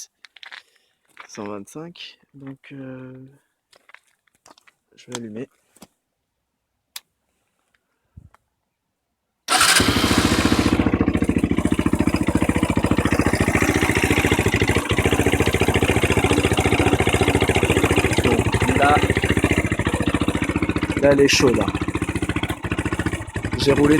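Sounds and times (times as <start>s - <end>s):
motorcycle engine starting and idling: 9.5s - 23.9s.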